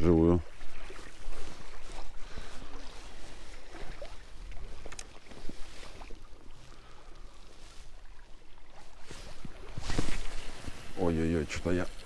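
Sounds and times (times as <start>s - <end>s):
fishing reel clicks and rustles: 4.4s - 5.4s.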